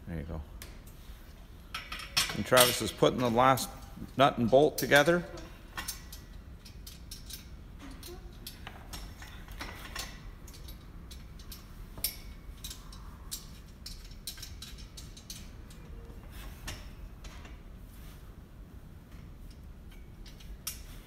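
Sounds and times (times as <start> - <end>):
steel tubing clicking and clinking: 1.7 - 16.0, 19.4 - 21.0.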